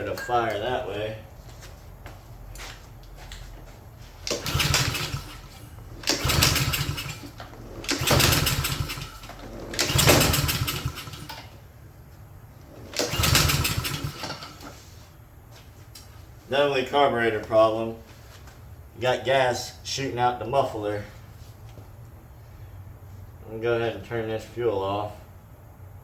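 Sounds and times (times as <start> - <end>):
lawn mower engine cranking: 4.2 - 11.6, 12.6 - 14.8.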